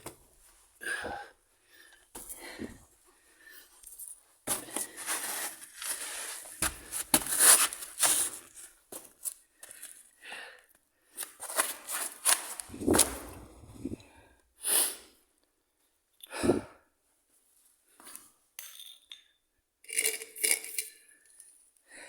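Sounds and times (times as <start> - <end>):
person breathing heavily: 0.8 - 3.8, 16.3 - 16.8.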